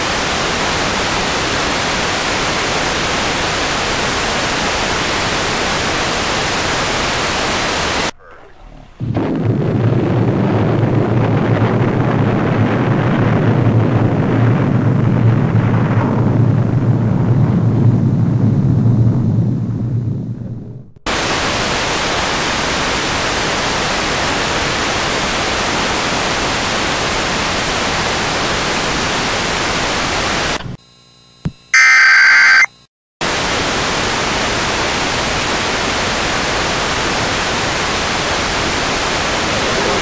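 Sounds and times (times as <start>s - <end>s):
television static hiss: 0.0s - 9.0s
loud electronic tone: 31.7s - 32.8s.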